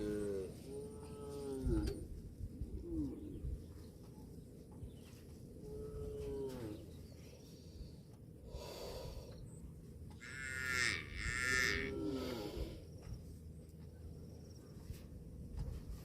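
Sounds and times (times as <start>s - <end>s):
cattle mooing: 10.2s - 12.7s.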